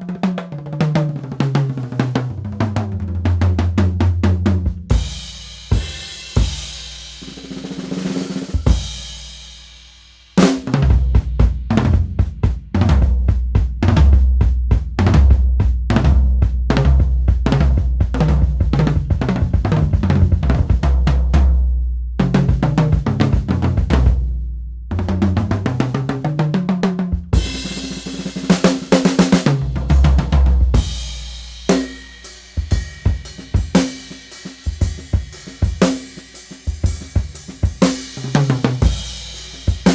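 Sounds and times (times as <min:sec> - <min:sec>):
drum kit playing: 0:00.0 - 0:21.5, 0:22.2 - 0:24.4, 0:25.0 - 0:39.9
hi-hat strikes: 0:30.8 - 0:39.9.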